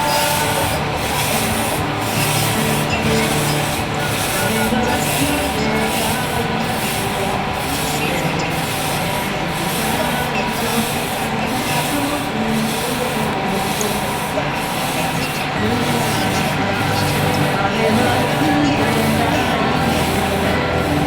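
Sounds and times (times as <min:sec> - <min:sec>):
model train running on track: 0:00.0 - 0:21.0.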